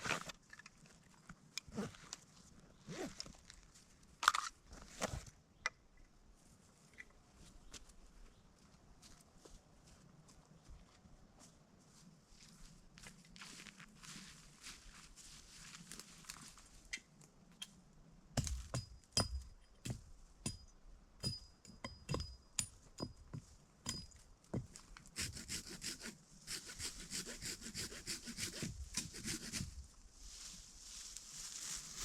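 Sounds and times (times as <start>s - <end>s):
knocks with metallic ring: 18.4s - 23.2s, 23.9s - 24.2s
saw cutting wood: 25.2s - 29.8s.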